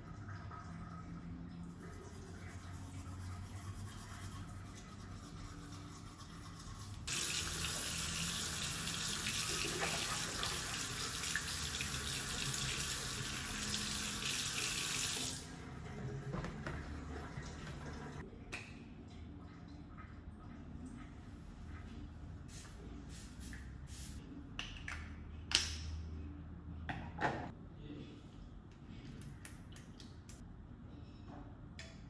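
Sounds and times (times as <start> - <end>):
tap water running into sink: 7.1 - 18.2.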